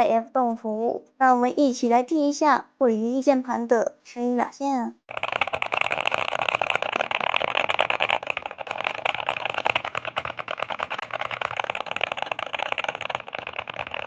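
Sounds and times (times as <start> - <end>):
mechanical keyboard typing: 5.1 - 14.0.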